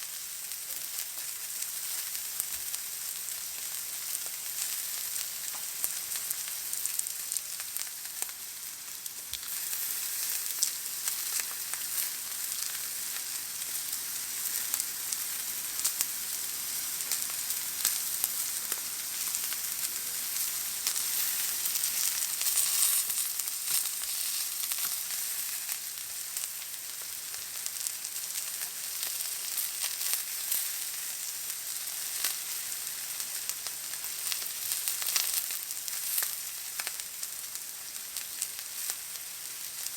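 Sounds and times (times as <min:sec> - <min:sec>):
steak sizzling in a pan: 0:00.0 - 0:39.9.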